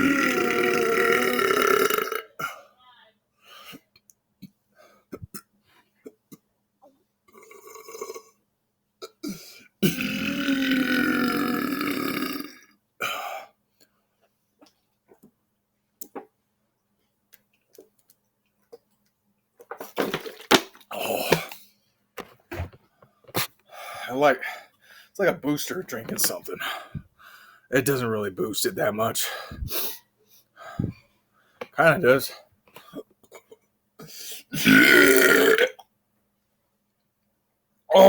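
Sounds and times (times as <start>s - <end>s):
man belching loudly: 0.0s - 2.6s, 7.3s - 8.4s, 9.8s - 13.2s, 34.5s - 35.8s.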